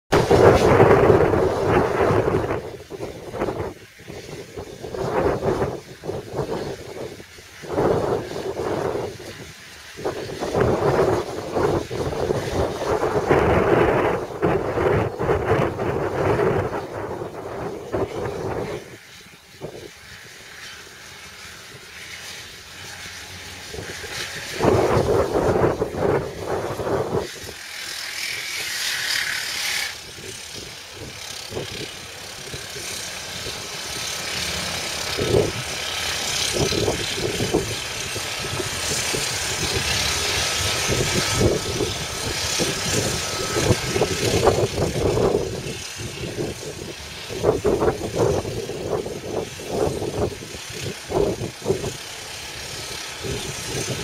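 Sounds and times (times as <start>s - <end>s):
loud clatter: 0.1s - 19.1s
excavator diesel engine working: 0.1s - 54.0s.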